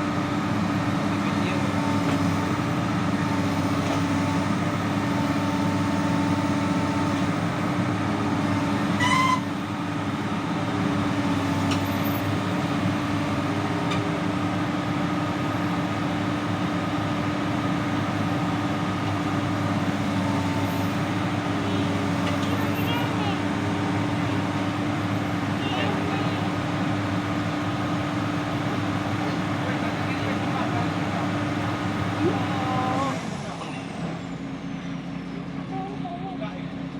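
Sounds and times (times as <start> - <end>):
excavator diesel engine running: 0.0 - 36.9.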